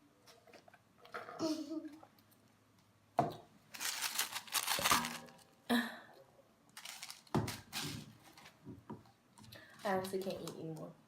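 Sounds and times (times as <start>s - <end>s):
paper packaging crinkling: 3.7s - 5.6s, 6.8s - 8.6s.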